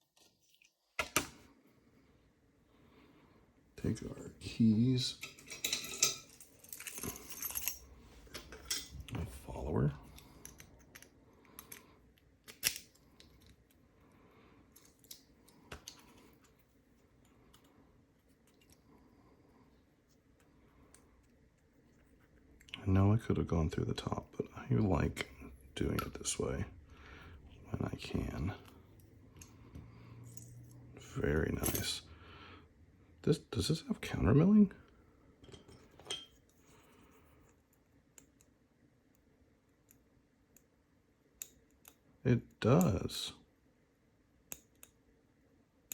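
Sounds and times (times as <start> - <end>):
small metal parts clicking: 5.2 - 8.9, 12.4 - 13.5.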